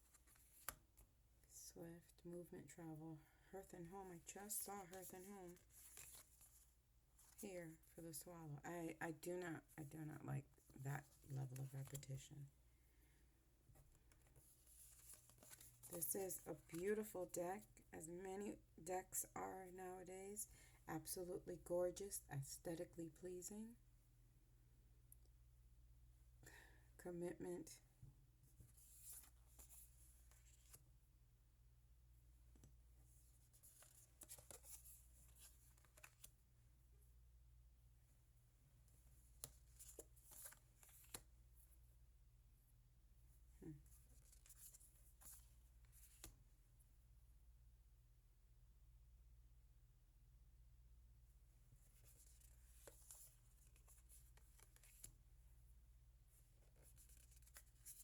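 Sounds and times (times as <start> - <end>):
cards rustling and tapping: 0.1 - 1.1, 5.0 - 6.6, 13.9 - 16.1, 33.5 - 36.3, 39.2 - 41.3, 52.0 - 55.2.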